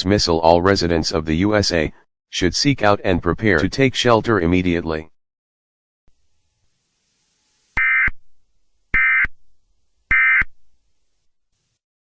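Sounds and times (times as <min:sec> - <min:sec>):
buzzy digital data tones: 0:06.1 - 0:09.4, 0:10.0 - 0:10.6.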